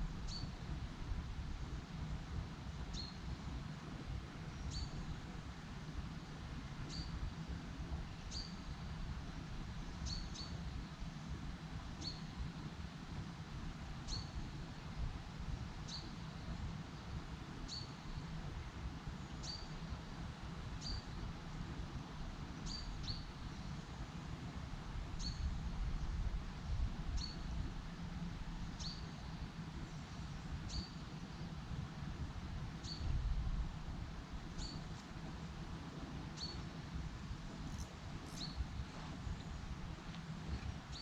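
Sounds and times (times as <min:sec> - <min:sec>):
small bird calling: 0:36.4 - 0:36.7, 0:38.2 - 0:38.6.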